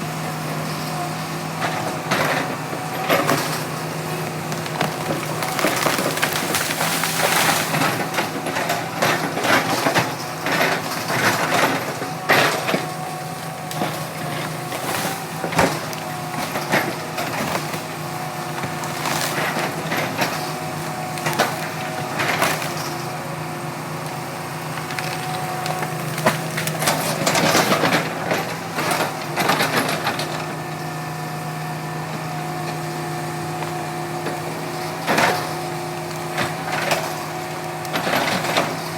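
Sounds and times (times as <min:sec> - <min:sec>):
diesel engine running under load: 0:00.0 - 0:38.9
wood cracking and crunching: 0:03.2 - 0:09.9, 0:13.6 - 0:23.0.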